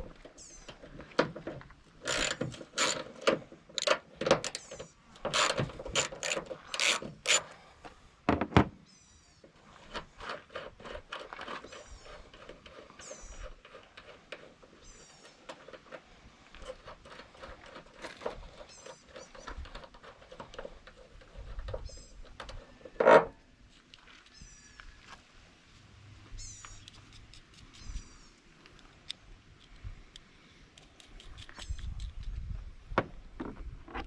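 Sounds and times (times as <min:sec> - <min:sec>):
ratchet wrench clicking: 0:02.0 - 0:04.6, 0:05.2 - 0:07.4
short high squeaks: 0:03.8 - 0:07.5, 0:11.4 - 0:13.9, 0:18.0 - 0:19.7.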